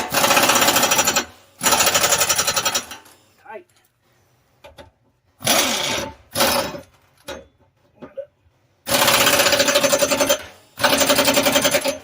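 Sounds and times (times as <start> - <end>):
pneumatic air ratchet: 0.0 - 3.3, 5.4 - 7.4, 8.8 - 12.0.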